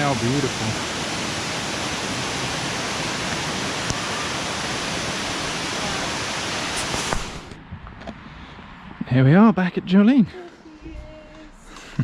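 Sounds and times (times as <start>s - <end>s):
large waterfall rushing: 0.0s - 7.5s.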